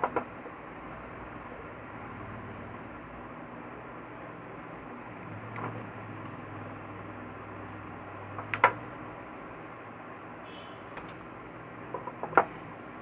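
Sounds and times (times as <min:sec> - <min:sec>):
small handling clicks: 0:11.0 - 0:11.3.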